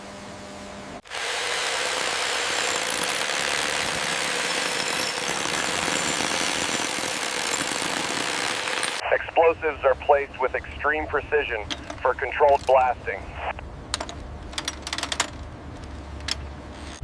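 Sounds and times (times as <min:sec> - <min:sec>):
pneumatic rock drill hammering: 0:01.0 - 0:09.0.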